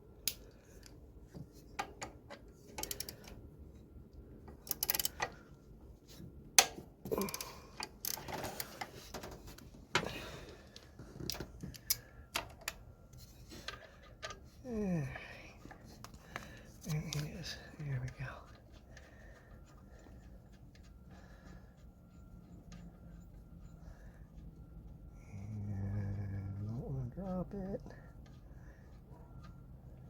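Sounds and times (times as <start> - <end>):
ratchet wrench clicks: 2.8 - 3.2, 4.6 - 5.2.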